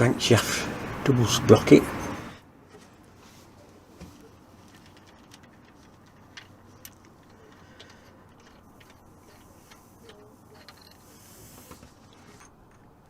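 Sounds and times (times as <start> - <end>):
metal engine parts clinking: 4.6 - 11.2, 12.0 - 13.0.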